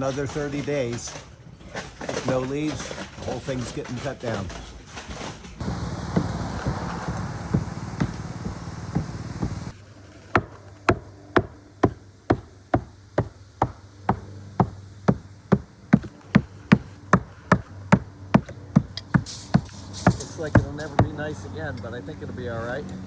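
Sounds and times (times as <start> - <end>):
hammer blows on roof: 5.6 - 9.7, 10.4 - 21.2.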